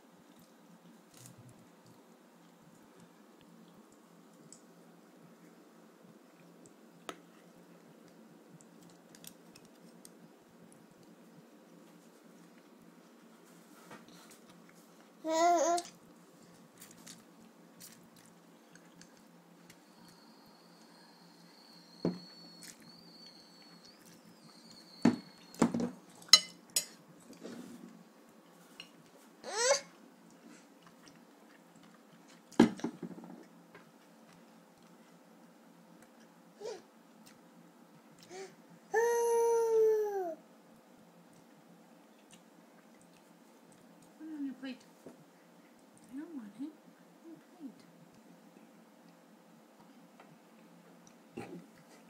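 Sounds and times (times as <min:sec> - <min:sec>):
tableware knocking and clinking: 0:25.1 - 0:27.0.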